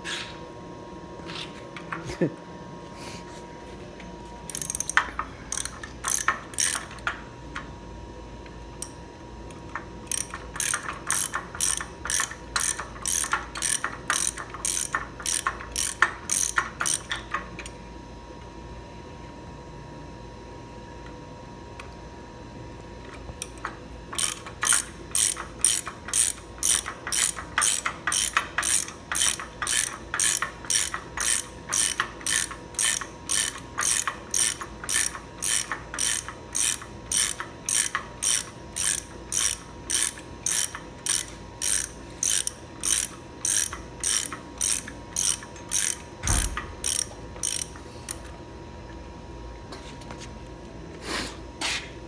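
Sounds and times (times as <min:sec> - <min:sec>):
hand ratchet clicking: 0:04.5 - 0:07.2, 0:09.7 - 0:17.7, 0:23.4 - 0:48.3.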